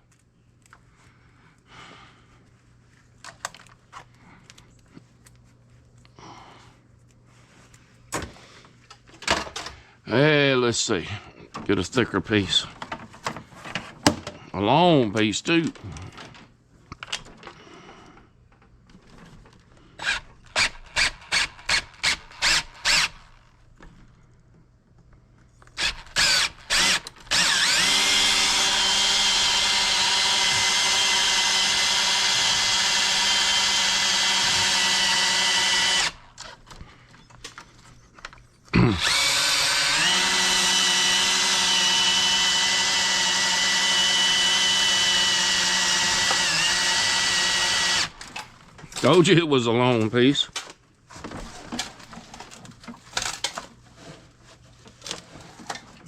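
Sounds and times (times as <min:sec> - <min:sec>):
power tool motor running: 0:20.0 - 0:23.2, 0:25.8 - 0:36.3, 0:39.0 - 0:48.3.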